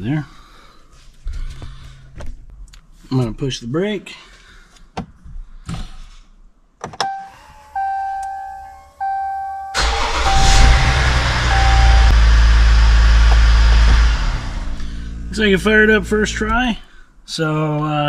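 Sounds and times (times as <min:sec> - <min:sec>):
dashboard chimes: 0:07.0 - 0:12.2
diesel engine idling: 0:09.0 - 0:16.5.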